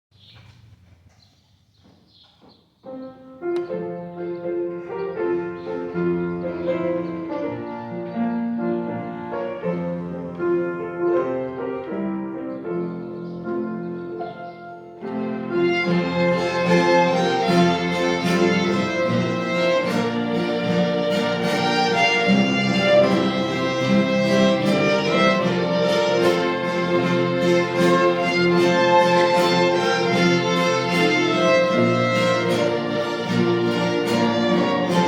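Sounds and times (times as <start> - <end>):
piano: 2.7 - 35.0
bowed strings: 15.1 - 35.0.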